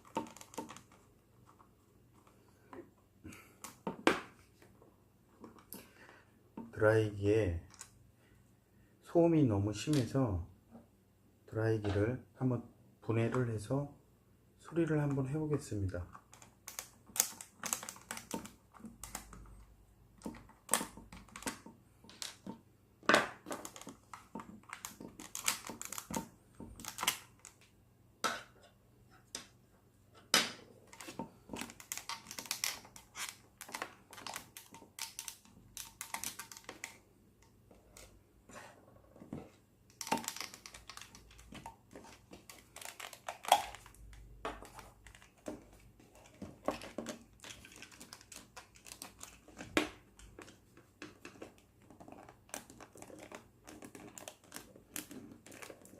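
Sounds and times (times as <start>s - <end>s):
plastic hair dryer parts clicking: 30.9s - 37.0s, 39.9s - 44.0s.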